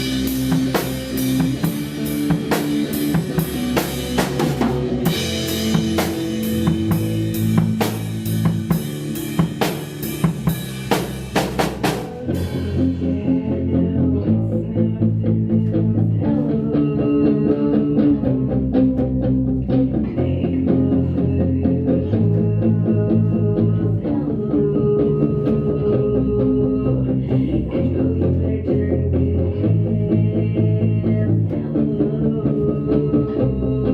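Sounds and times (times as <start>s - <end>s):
drum kit beat: 0.0s - 13.4s
bass guitar: 0.0s - 33.9s
electric guitar: 0.0s - 33.9s.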